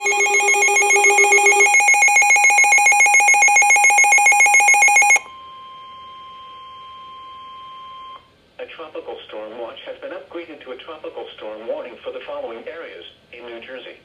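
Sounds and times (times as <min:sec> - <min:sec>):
rapid beeping alarm: 0:00.0 - 0:05.7
steady single warning tone: 0:00.0 - 0:08.3.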